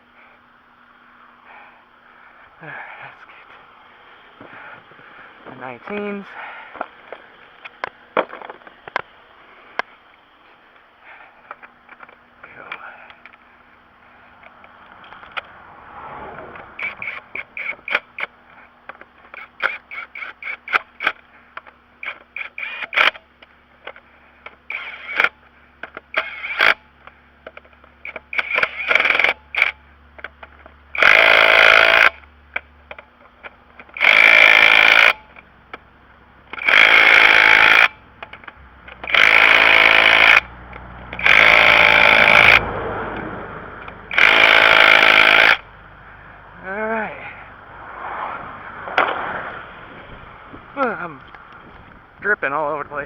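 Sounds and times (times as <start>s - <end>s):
impact wrench bursts: 16.6s - 18.6s, 19.2s - 32.3s, 32.9s - 35.8s, 36.4s - 45.7s.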